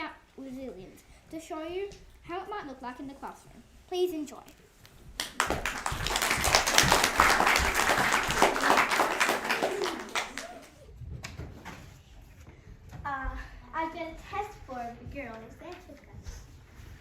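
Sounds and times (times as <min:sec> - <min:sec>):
audience applauding: 0:05.2 - 0:10.8.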